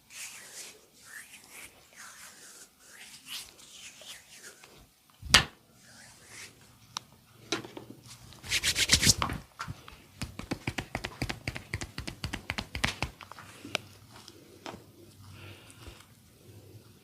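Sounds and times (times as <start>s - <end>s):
hands tapping on a body: 10.2s - 13.3s.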